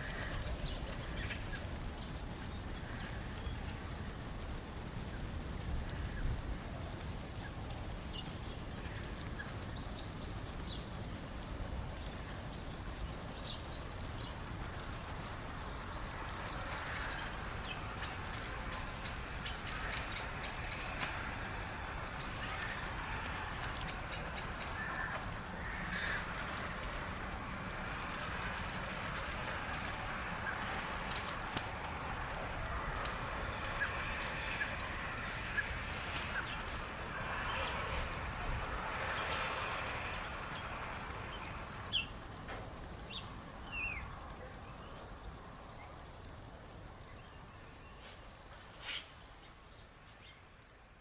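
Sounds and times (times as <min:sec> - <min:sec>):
wild birds calling: 0:00.0 - 0:03.9, 0:12.0 - 0:42.2.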